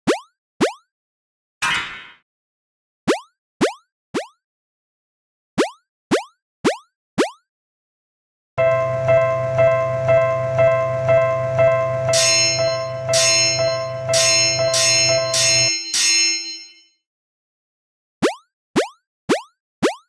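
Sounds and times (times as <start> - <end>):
brighter bell strikes: 8.6 - 16.9
level-crossing warning bell: 8.6 - 16.9.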